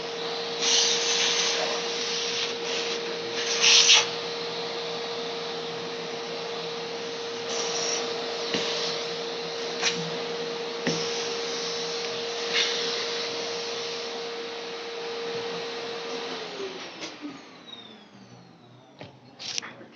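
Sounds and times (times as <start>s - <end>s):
electric fan motor whine: 0.0s - 19.6s.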